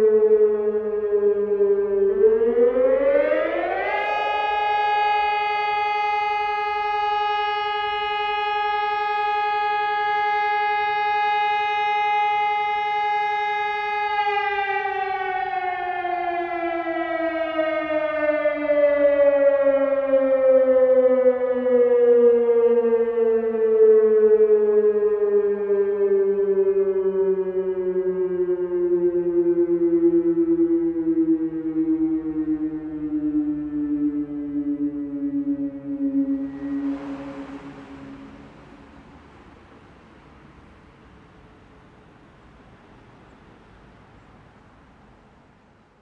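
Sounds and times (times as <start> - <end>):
electronic siren wailing: 0.0 - 41.3.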